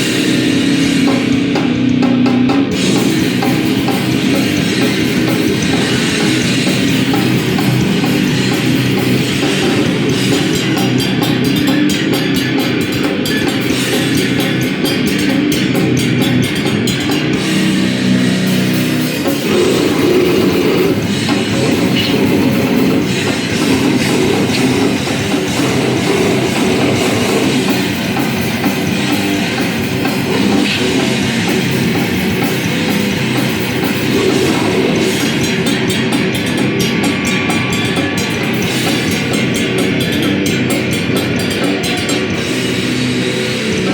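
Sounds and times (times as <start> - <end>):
distorted electric guitar: 0.0 - 43.9
drum kit: 0.0 - 43.9.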